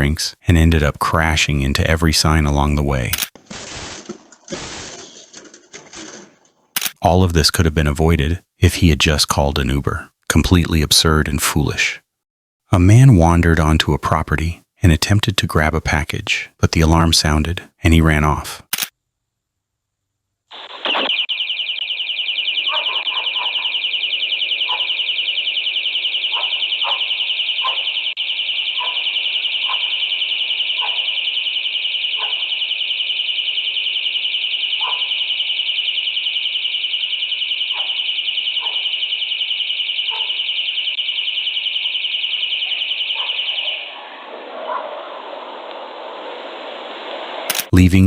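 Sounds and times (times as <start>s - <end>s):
warbling alarm siren: 20.5s - 47.4s.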